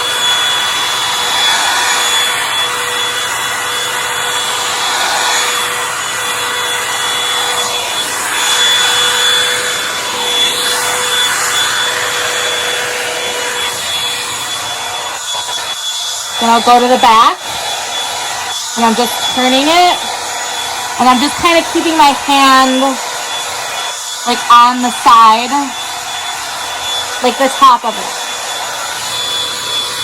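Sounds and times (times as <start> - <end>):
rushing air: 0.0 - 16.4
hot-air brush motor whine: 0.0 - 30.0.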